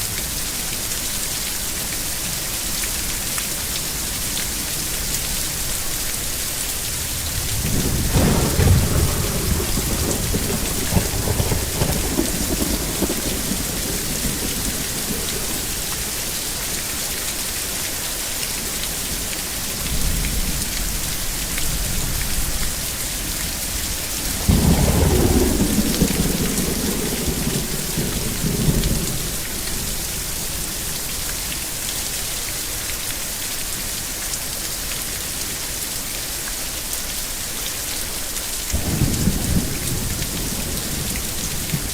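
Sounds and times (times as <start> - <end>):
heavy rain falling: 0.0 - 41.9
thunder rolling: 6.9 - 16.7, 23.7 - 31.2, 38.8 - 41.9.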